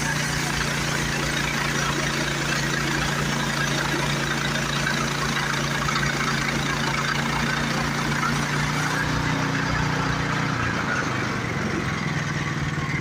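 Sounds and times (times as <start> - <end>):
small gasoline engine running: 0.0 - 13.0.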